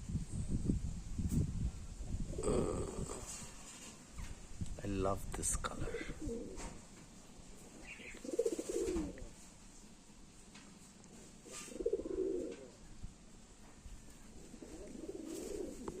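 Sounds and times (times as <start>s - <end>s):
pigeons cooing: 2.3s - 4.4s, 5.9s - 6.9s, 7.6s - 9.4s, 11.4s - 12.9s, 14.2s - 16.0s.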